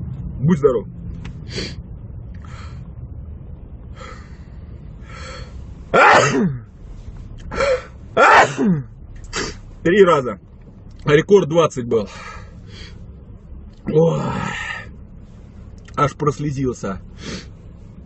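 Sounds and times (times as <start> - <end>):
car engine hum: 0.0 - 18.0
gasping in-breaths: 2.4 - 2.9, 3.9 - 5.6
man sneezing: 5.9 - 6.6, 7.5 - 9.6.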